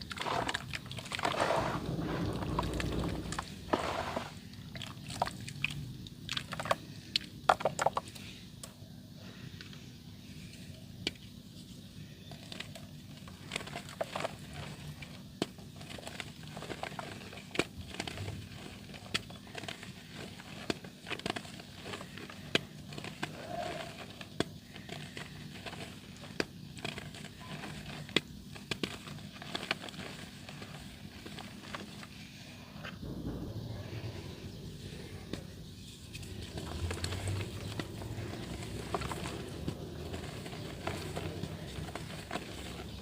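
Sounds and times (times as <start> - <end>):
dirt crumbling in water: 0.0 - 8.0, 33.1 - 43.0
sharp crackles and crunches: 0.0 - 8.2, 11.8 - 43.0.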